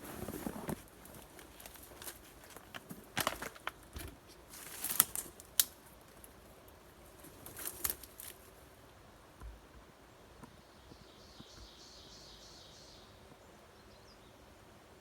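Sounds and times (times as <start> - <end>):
footsteps through brush: 0.0 - 8.6
vegetation rustling: 0.0 - 8.8
twigs cracking: 0.2 - 8.6.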